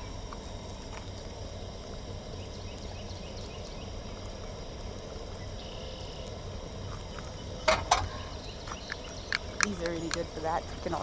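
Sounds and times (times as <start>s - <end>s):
sharp clicks: 7.6s - 11.0s.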